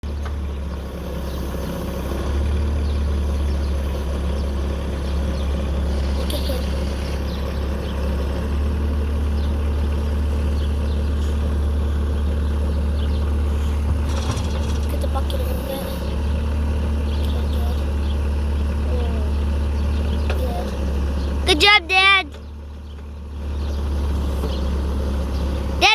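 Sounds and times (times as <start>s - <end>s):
diesel engine running: 0.0s - 25.9s.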